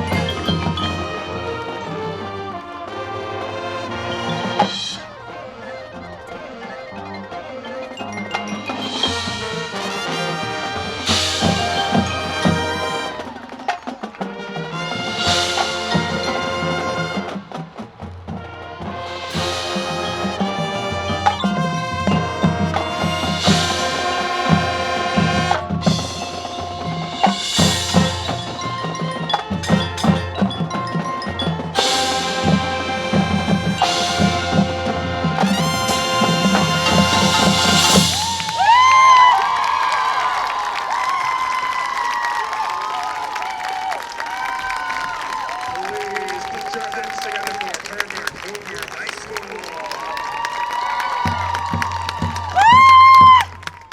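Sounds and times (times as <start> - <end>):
brass chords: 0.0 - 38.6
drumline and mallet percussion: 0.0 - 53.9.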